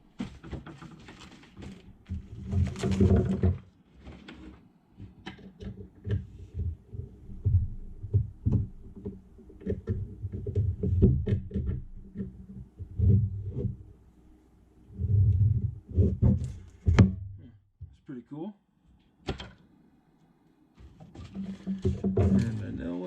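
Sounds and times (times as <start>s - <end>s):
dull knocks: 5.6s - 13.8s, 16.0s - 17.5s.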